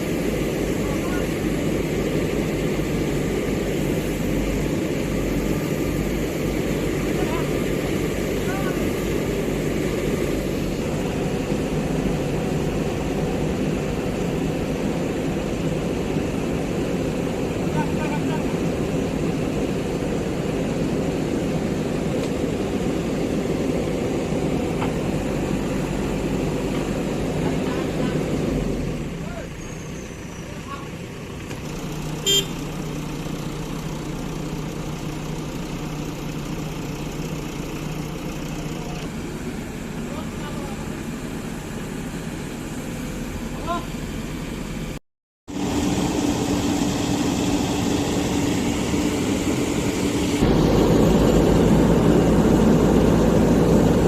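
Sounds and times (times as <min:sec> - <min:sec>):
diesel engine droning: 0:00.0 - 0:54.0.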